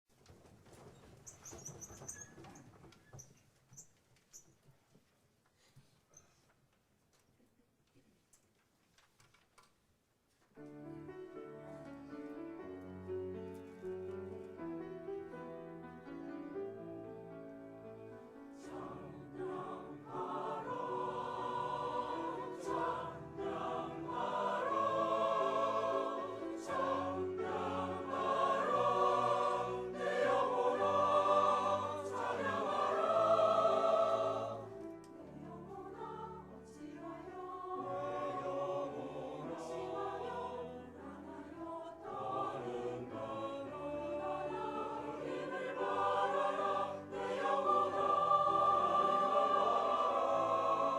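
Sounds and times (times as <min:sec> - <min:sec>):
piano accompaniment: 0:10.6 - 0:50.9
choir singing: 0:18.1 - 0:50.9.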